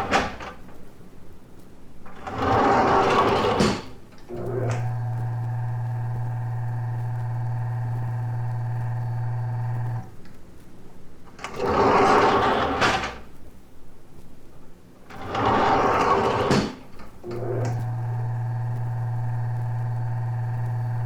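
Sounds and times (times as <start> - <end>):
steady hum: 4.3 - 10.2, 17.2 - 21.0.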